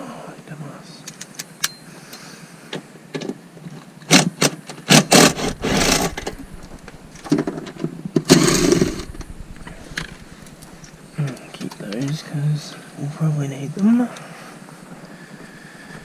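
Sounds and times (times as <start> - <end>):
harsh scraping and rattling: 4.9 - 12.2.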